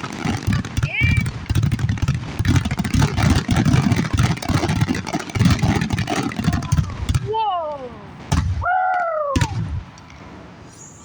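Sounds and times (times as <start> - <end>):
continuous rumble: 0.0 - 11.0
fireworks crackling and banging: 0.0 - 11.0.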